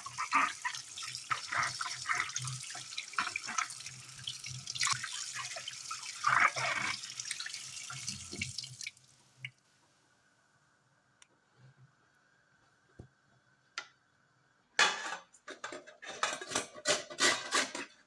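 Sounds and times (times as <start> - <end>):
tap water running into sink: 0.0 - 9.0.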